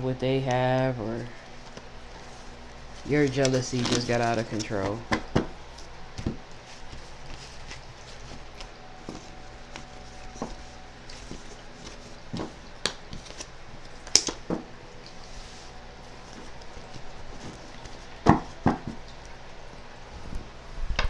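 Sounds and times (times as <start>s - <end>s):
low room hum: 0.0s - 21.0s.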